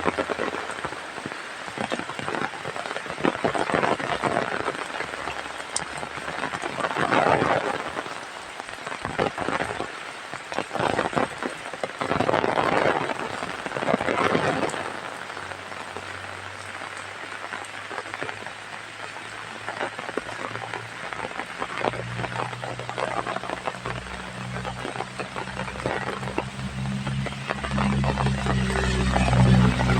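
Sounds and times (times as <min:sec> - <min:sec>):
heavy rain pattering: 0:00.0 - 0:29.9.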